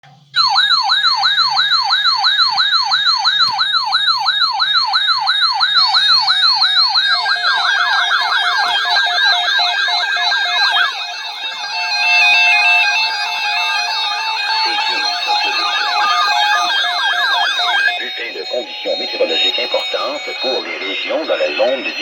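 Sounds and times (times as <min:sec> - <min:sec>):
electronic alert siren sweeping: 0:00.4 - 0:22.0
second sweeping siren tone: 0:00.4 - 0:22.0
stepped electronic tones: 0:07.4 - 0:22.0.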